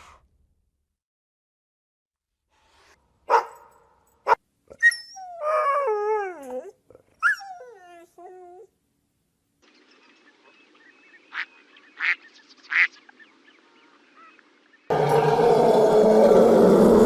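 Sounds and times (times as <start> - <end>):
dog barking: 3.3 - 4.4
dog howling: 14.9 - 17.0.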